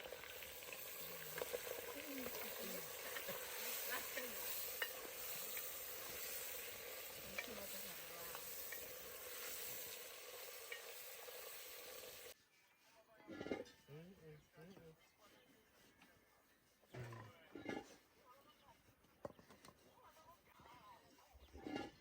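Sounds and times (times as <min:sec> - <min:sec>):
fat sizzling in a pot: 0:00.0 - 0:12.9.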